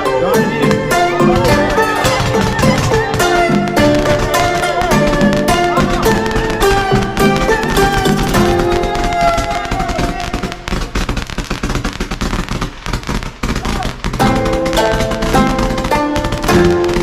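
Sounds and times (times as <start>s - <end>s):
music: 0.0s - 10.7s, 14.2s - 17.0s
firecrackers crackling: 0.0s - 17.0s.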